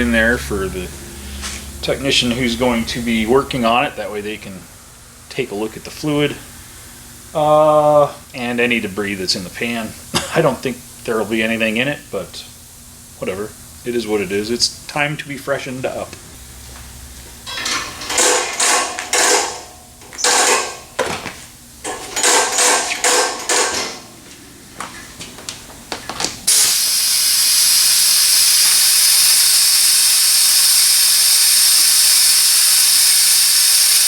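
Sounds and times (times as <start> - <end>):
compressed air hissing: 26.5 - 34.0.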